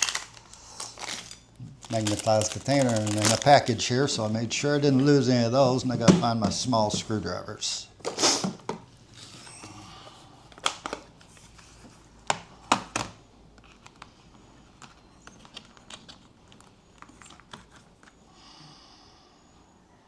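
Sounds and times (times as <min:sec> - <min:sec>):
rustling: 0:00.0 - 0:07.2.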